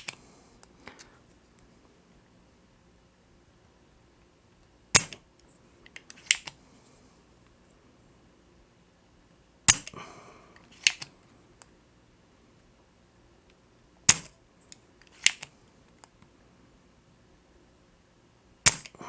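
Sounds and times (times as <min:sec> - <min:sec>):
solder sucker snapping: 0:18.7 - 0:19.0.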